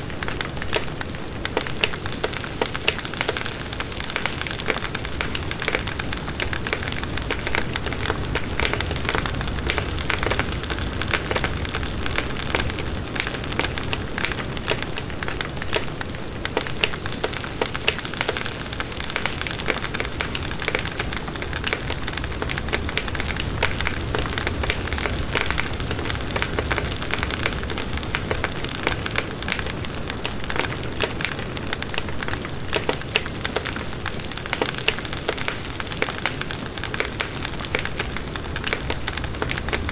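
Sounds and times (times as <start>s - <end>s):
burning wood crackling and popping: 0.0s - 39.9s
bonfire flames rushing: 34.4s - 39.9s.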